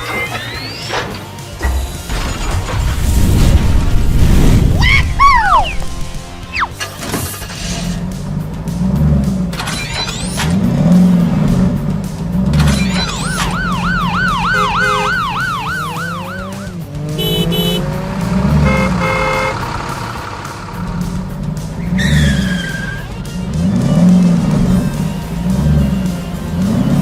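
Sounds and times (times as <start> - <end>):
low repeating rumble: 1.9 - 6.8, 17.8 - 22.0
wavering siren wail: 4.8 - 6.8, 12.8 - 17.9
brief falling squeal: 12.7 - 13.6, 22.0 - 23.1
short horn blasts: 14.4 - 15.4, 17.1 - 19.7.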